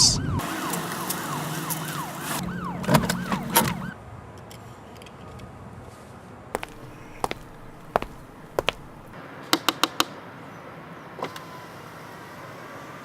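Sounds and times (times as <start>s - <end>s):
police siren yelp: 0.0s - 4.0s.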